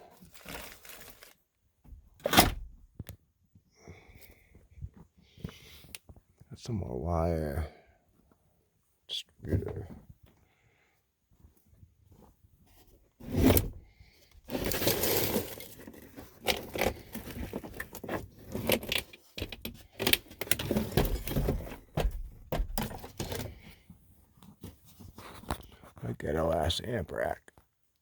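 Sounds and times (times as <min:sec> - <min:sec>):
handling clicks and clatter: 0:14.5 - 0:23.6.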